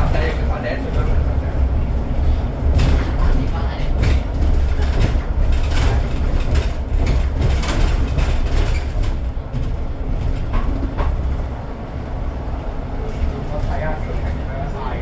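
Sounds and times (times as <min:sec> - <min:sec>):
bus engine and road rumble: 0:00.0 - 0:15.0
rattles and knocks of bus fittings: 0:02.4 - 0:11.6.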